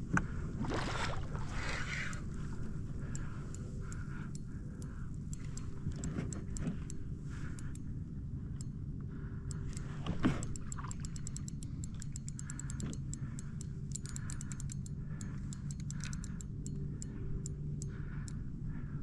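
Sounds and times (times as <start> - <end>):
steady low rumble: 0.0 - 19.0
fishing reel drag clicking: 1.6 - 7.9, 9.5 - 18.4.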